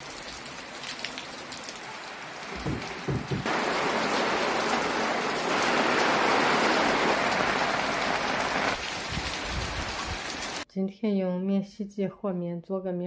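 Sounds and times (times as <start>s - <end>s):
heavy rain splashing: 0.0s - 10.6s
low thuds: 2.5s - 3.5s.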